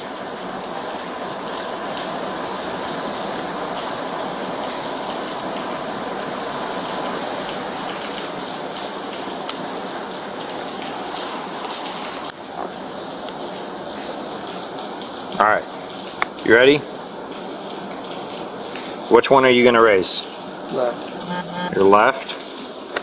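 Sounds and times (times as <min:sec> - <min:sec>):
faint steady tone: 0:20.8 - 0:22.4.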